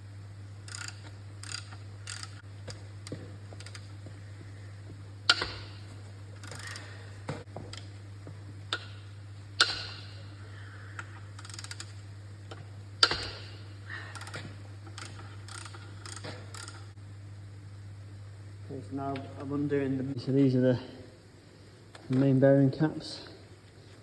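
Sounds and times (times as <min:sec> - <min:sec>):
tool ticks and clicks: 0:00.6 - 0:03.9, 0:05.3 - 0:05.7, 0:11.0 - 0:13.5, 0:14.2 - 0:16.9.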